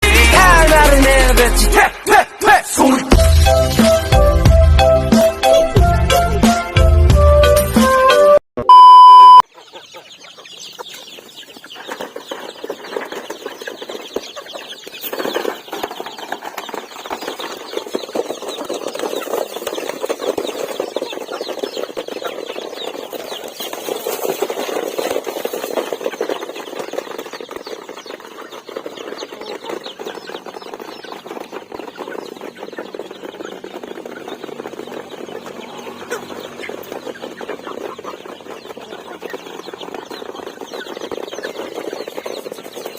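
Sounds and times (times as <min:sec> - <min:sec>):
chickens clucking: 0:08.7 - 0:42.9.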